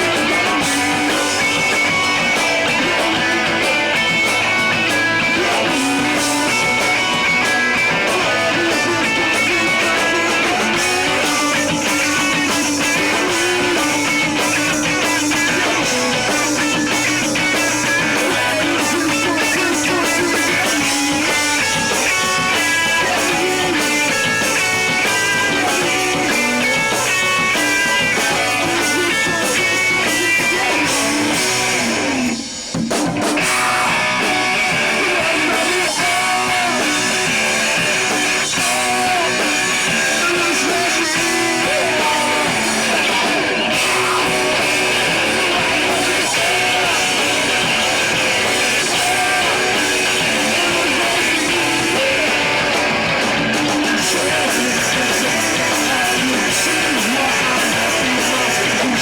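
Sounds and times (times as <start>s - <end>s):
drum kit: 0.0s - 59.0s
electric guitar: 0.0s - 59.0s.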